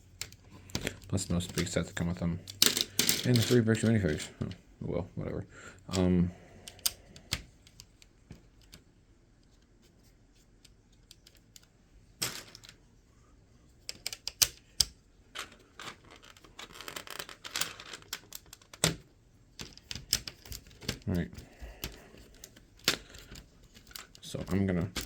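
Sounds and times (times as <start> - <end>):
plastic bricks clicking: 2.5 - 4.6, 13.9 - 19.0.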